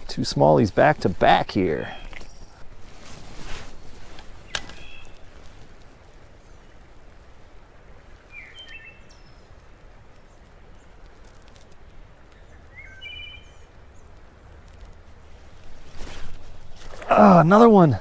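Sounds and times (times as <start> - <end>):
bird chirping: 0.0 - 2.6, 4.5 - 5.2, 8.3 - 9.4, 12.4 - 13.7
low outdoor background hiss: 0.0 - 18.0.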